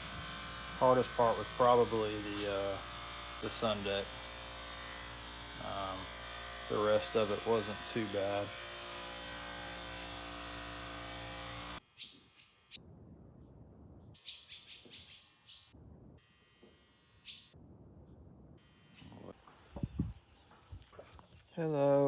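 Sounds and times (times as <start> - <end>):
electric machine hum: 0.0 - 11.9, 16.2 - 17.6, 18.6 - 20.3.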